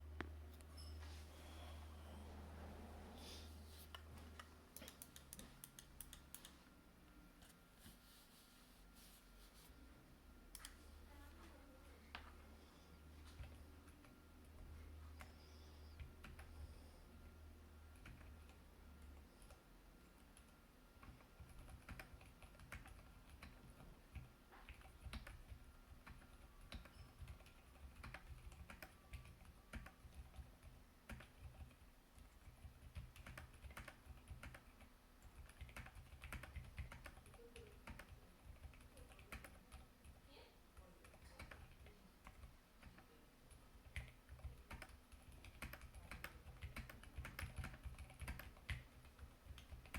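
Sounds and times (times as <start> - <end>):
soft keystrokes on mechanical keyboard: 3.8 - 6.6, 13.2 - 14.6, 15.2 - 16.8, 17.9 - 49.9.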